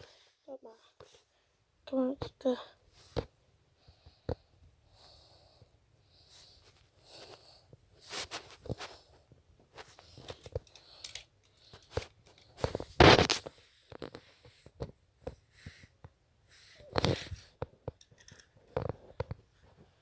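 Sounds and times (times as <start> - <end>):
toy cars rustling and scraping: 6.6 - 15.9, 16.6 - 19.9.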